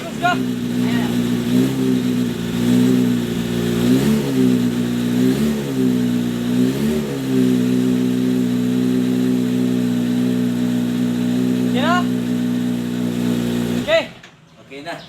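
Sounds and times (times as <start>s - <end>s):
motorcycle engine idling and revving: 0.0s - 14.5s.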